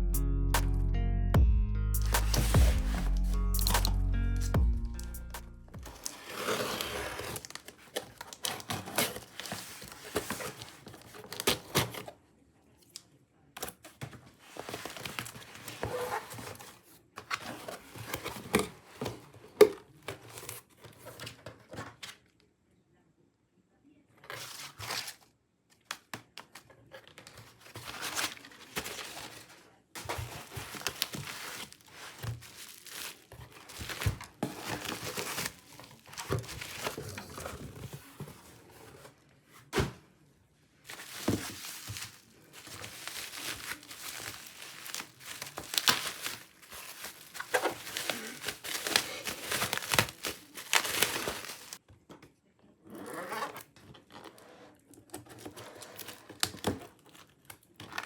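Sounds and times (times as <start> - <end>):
packaging crinkling and tearing: 5.0 - 12.1, 13.6 - 18.6, 27.2 - 38.3, 40.9 - 51.8, 55.3 - 58.0.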